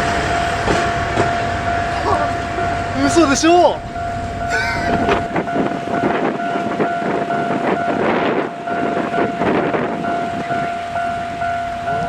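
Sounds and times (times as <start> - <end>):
level-crossing alarm ringing: 0.0 - 12.0
train wheels clattering over rail joints: 0.0 - 12.0.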